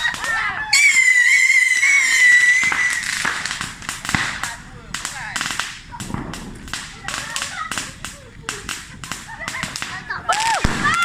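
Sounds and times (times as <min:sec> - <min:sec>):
firework pops: 0:00.0 - 0:11.0
firework whistle: 0:00.0 - 0:11.0.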